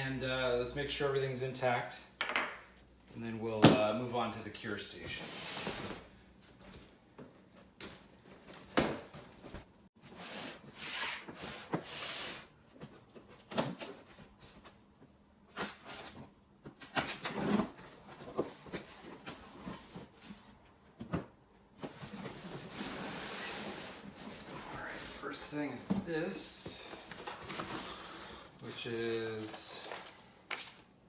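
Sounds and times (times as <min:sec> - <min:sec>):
packaging rustling swishes: 0:22.3 - 0:30.9.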